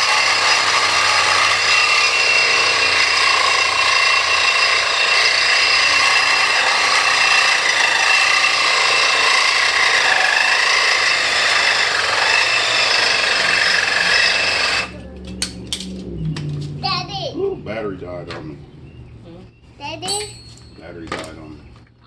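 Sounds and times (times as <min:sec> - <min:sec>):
power tool cutting metal: 0:00.0 - 0:15.0.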